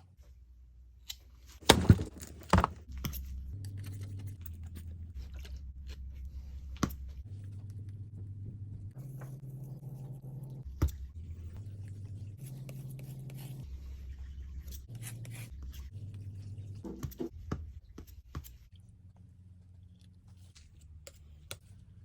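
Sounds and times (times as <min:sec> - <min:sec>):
soft low bass notes: 0:02.8 - 0:18.0.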